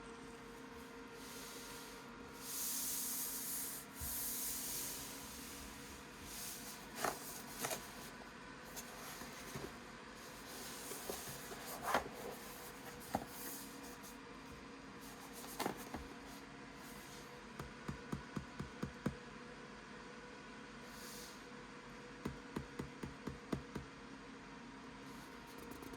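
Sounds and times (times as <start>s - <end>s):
cardboard sliding rubs: 1.2s - 14.1s
taps and knocks on cardboard: 17.5s - 19.2s, 22.2s - 23.9s.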